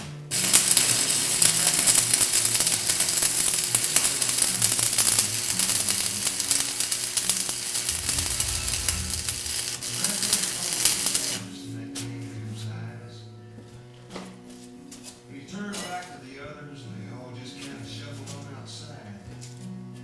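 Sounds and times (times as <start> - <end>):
arc welding crackling sizzle: 0.0 - 11.5.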